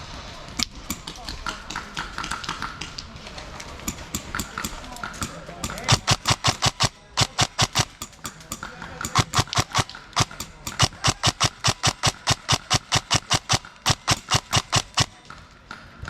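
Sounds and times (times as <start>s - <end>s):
rapid sharp clacks: 3.9s - 15.3s.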